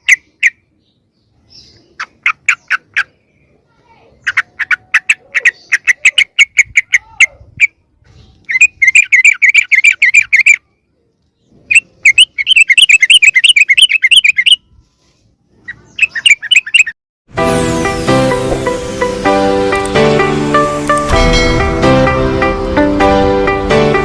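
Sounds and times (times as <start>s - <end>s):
bird chattering call: 1.9s - 3.2s, 4.2s - 7.8s, 8.4s - 10.6s, 11.7s - 14.6s, 15.7s - 16.9s.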